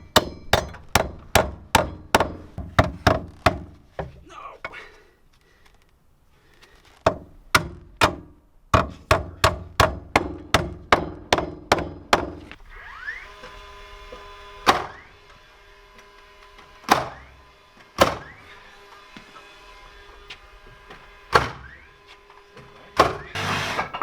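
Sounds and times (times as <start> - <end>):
hammer driving nails into wood: 0.1 - 4.1, 7.0 - 12.6, 18.0 - 18.4, 21.3 - 21.7, 23.0 - 24.0.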